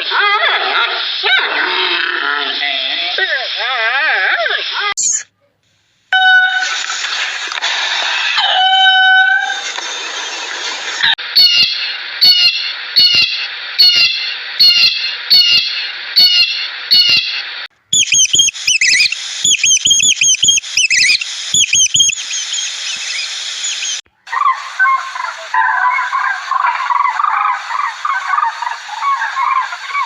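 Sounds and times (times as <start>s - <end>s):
rapid high bird calls: 17.9s - 30.0s
short pitched bird call: 18.0s - 24.0s
low bird call: 18.0s - 30.0s.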